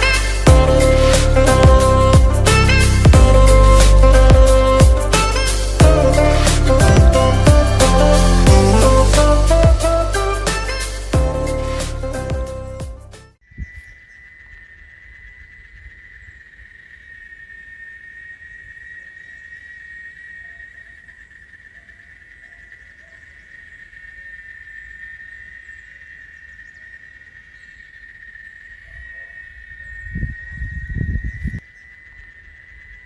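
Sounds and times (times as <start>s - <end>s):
low rumble: 0.0s - 10.4s
low bumps: 0.0s - 13.3s
insects trilling: 13.4s - 33.0s.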